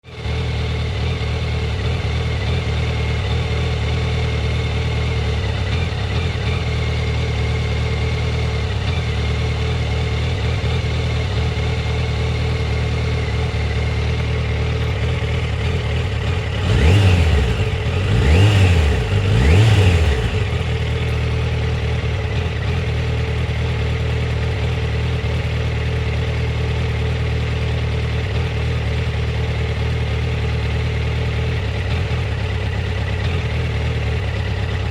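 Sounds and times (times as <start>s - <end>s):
motorcycle engine idling roughly: 0.0s - 34.9s
engine revving: 15.5s - 21.1s.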